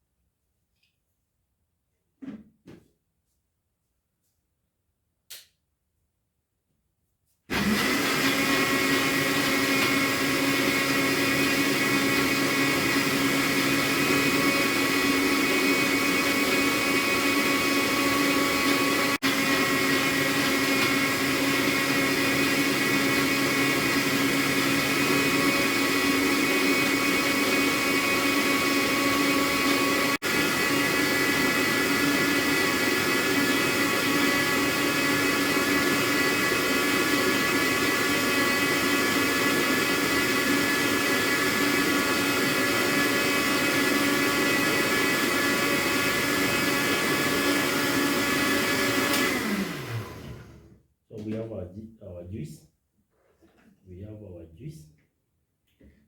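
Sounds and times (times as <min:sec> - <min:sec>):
electric blender running: 0:07.5 - 0:50.8.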